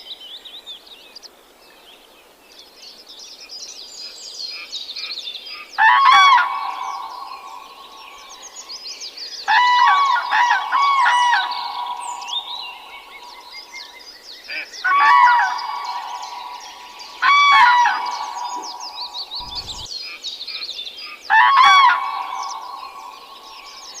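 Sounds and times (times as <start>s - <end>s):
high twittering of birds or insects: 0.0s - 24.0s
hornbills calling: 14.9s - 19.9s.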